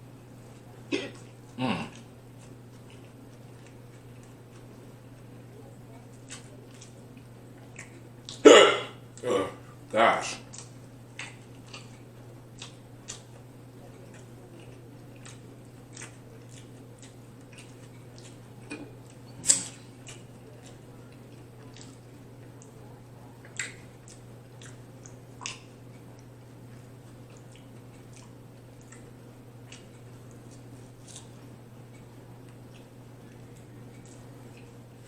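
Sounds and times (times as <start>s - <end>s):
person chewing food: 0.4s - 9.8s, 10.4s - 35.0s
wet mouth clicks and smacks: 23.5s - 25.7s.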